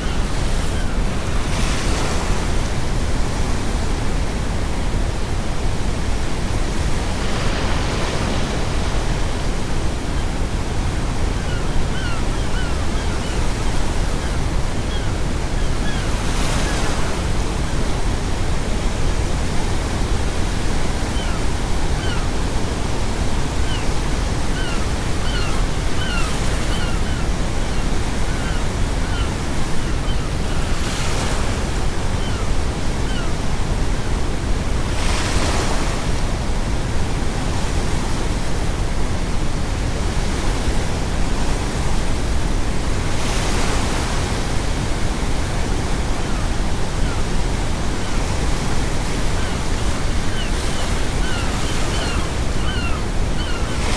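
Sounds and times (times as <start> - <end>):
seagulls calling: 0.0 - 1.2, 11.3 - 17.0, 21.2 - 22.3, 23.7 - 33.5, 46.2 - 53.9
ocean waves breaking: 0.0 - 3.9, 6.0 - 10.8, 24.6 - 37.6, 43.0 - 53.9.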